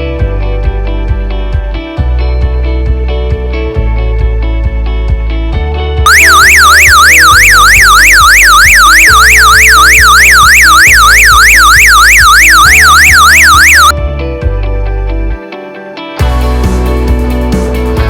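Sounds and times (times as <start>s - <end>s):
guitar background music: 0.0s - 7.8s, 12.4s - 18.0s
alarm siren sweeping: 6.1s - 14.0s.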